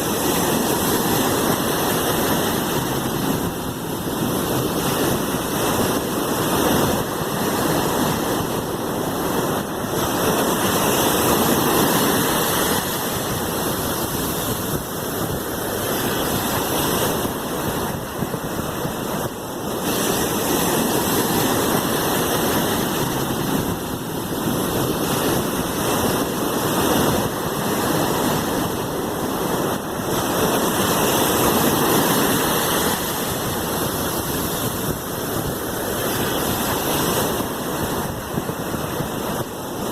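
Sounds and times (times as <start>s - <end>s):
sea waves washing in: 0.0s - 39.9s.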